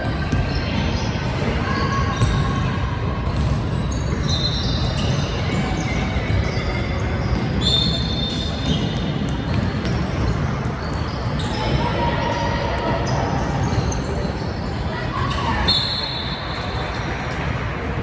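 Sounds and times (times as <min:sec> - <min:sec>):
din of gym hall: 0:00.0 - 0:18.0
short high shoe squeaks: 0:07.6 - 0:09.0.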